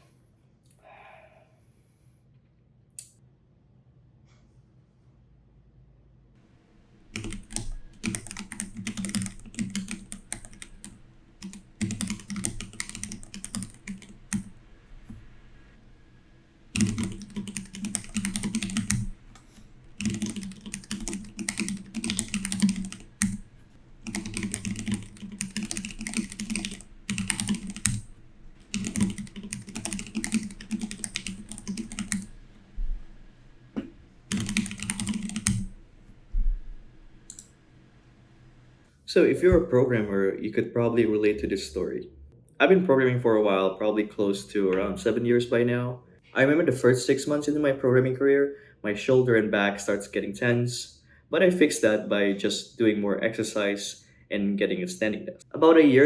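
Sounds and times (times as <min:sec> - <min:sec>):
fast mechanical keyboard typing: 0:07.1 - 0:15.3, 0:16.7 - 0:33.3, 0:34.2 - 0:35.8, 0:37.3 - 0:37.5.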